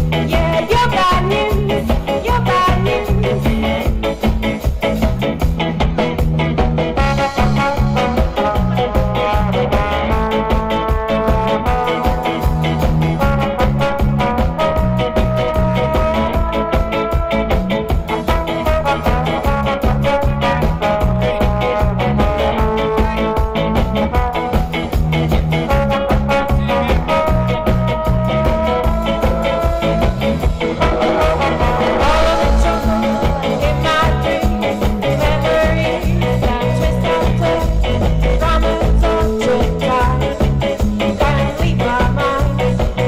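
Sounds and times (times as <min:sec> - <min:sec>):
live band playing: 0:00.0 - 0:43.0
bending note run: 0:30.0 - 0:34.4.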